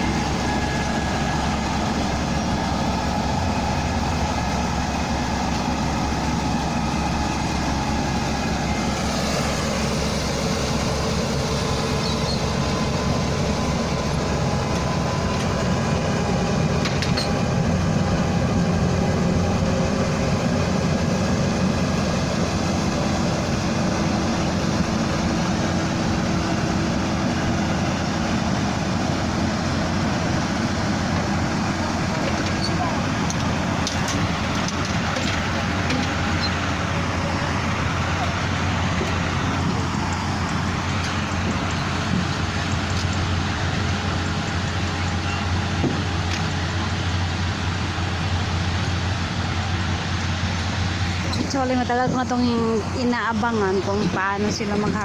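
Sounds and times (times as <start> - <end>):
combine harvester droning: 0.0 - 55.0.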